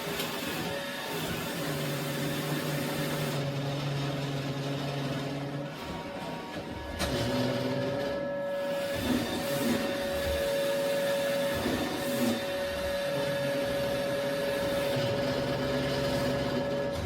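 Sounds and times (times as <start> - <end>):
robot vacuum running: 0.0 - 17.0.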